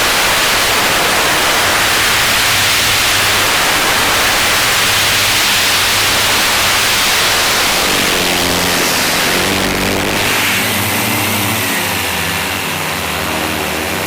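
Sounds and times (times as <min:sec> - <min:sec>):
propeller wash and wind hiss: 0:00.0 - 0:14.0
drone motor hum: 0:03.2 - 0:14.0.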